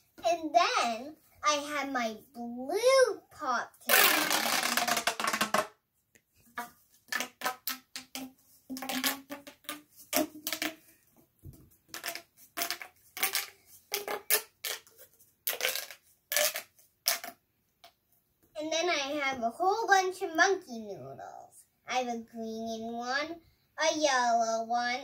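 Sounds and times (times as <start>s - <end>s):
plastic pop tube clicking and popping: 3.9s - 5.7s, 7.1s - 10.8s, 11.9s - 18.0s.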